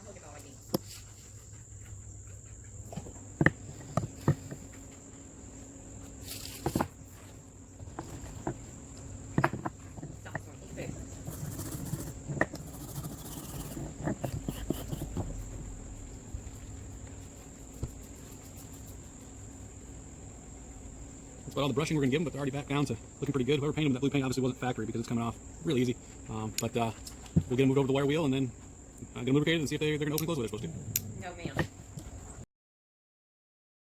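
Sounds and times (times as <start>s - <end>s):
brush bristles scrubbing metal: 10.2s - 15.7s, 16.3s - 27.0s.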